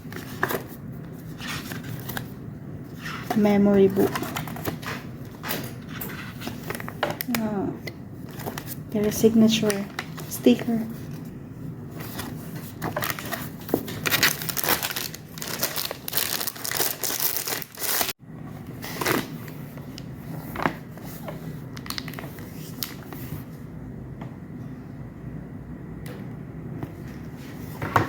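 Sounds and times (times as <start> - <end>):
packaging crinkling and rustling: 3.2 - 7.6, 8.2 - 11.3, 12.0 - 18.2, 18.8 - 23.3.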